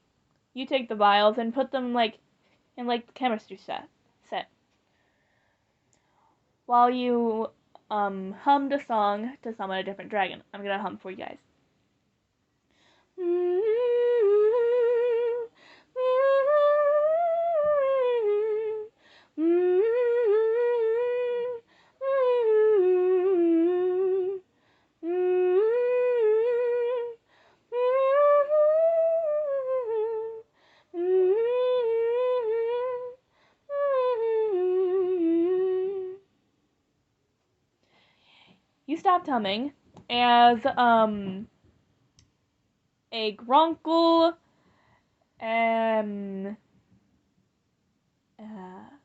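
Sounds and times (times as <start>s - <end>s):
person humming a melody: 13.2s - 36.3s, 45.4s - 46.6s, 48.4s - 49.0s.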